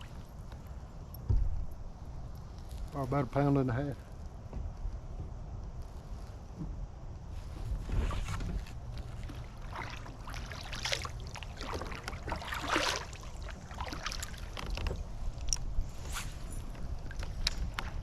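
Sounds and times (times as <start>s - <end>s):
kayak paddle swishing through water: 0.0s - 0.8s, 7.3s - 18.0s.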